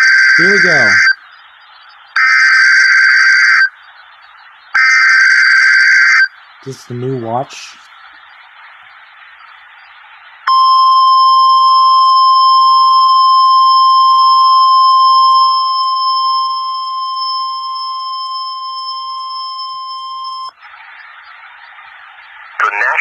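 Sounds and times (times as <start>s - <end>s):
loud steady high beep: 0.0s - 3.8s, 10.4s - 20.6s
faint radio hiss: 0.0s - 23.0s.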